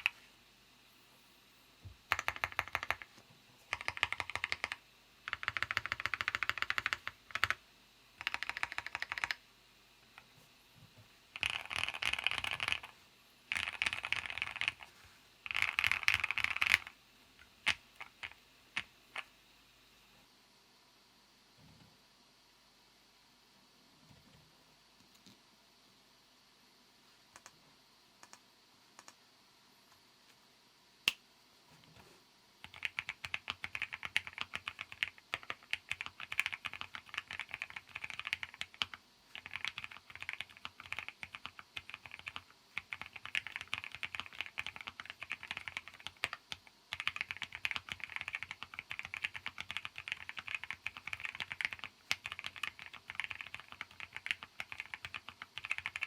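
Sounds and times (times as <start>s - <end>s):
mechanical keyboard typing: 2.1s - 3.1s, 3.7s - 7.6s, 8.2s - 9.4s, 11.3s - 17.0s, 17.6s - 19.3s, 29.0s - 29.2s, 32.6s - 56.0s.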